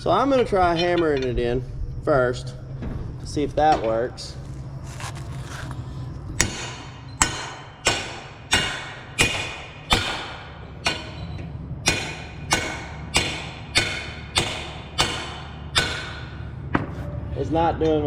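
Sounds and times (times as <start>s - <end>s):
hammer striking metal bolt: 6.4s - 16.9s.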